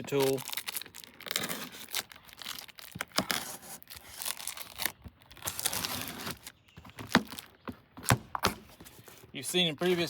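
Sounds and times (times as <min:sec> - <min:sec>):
package being cut and torn open: 0:00.0 - 0:07.5
packing crinkling: 0:00.0 - 0:07.6.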